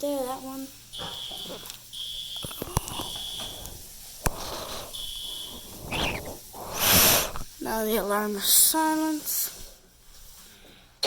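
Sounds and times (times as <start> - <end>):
fire alarm high-pitched tone: 0.9 - 3.8, 4.4 - 6.3
sharp clicks: 2.4 - 7.5.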